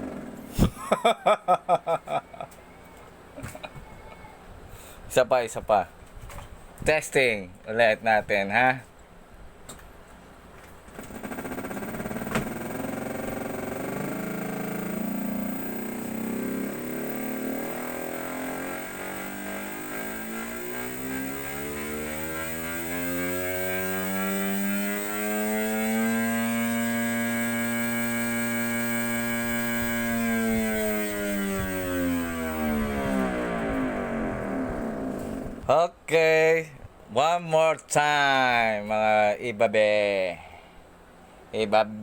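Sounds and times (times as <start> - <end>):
simulated motorcycle engine revving: 11.1 - 35.7.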